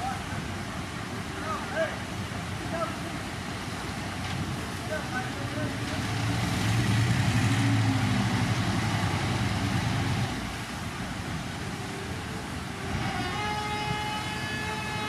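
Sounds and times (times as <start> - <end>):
heavy diesel engine under load: 5.2 - 11.3.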